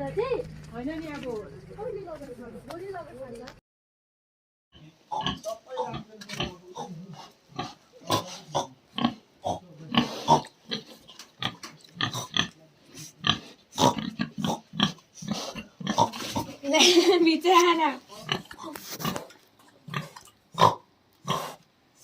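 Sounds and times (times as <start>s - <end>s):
animal grunting: 5.1s - 16.6s, 18.1s - 21.6s.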